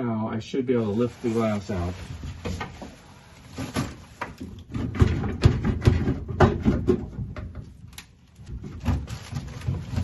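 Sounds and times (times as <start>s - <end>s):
door glass knocking against metal: 4.7s - 7.5s.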